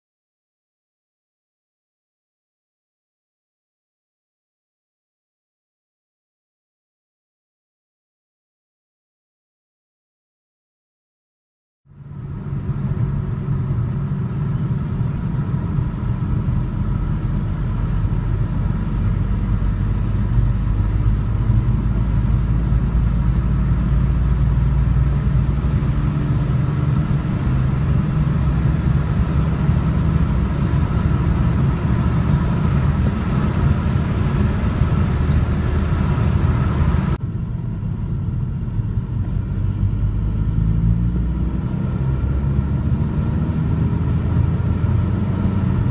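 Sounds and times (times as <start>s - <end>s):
engine running steadily: 11.9s - 45.9s.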